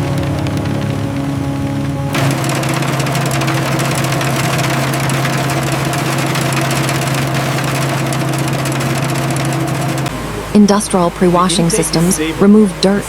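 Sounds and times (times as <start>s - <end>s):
industrial machinery humming: 0.0s - 13.0s.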